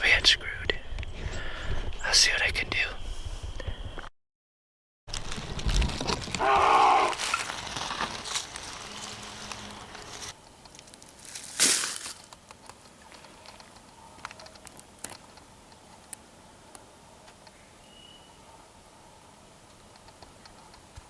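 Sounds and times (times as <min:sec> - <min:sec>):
rustling in dry leaves: 0:05.1 - 0:12.4.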